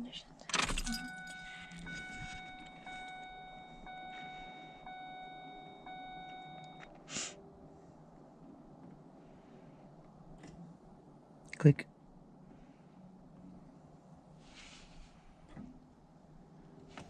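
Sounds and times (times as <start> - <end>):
high electronic tone: 0.8 - 6.8.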